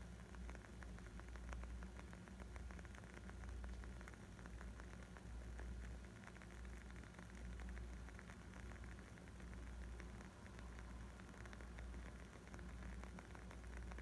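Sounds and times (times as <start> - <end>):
low steady rumble: 0.0 - 14.0
wood fire crackling: 0.0 - 14.0.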